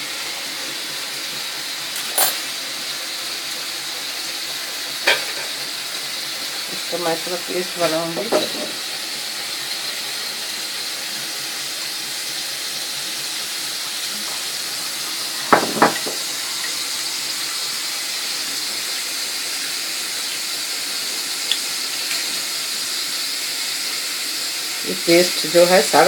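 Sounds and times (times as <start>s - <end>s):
onions sizzling in oil: 0.0s - 26.0s.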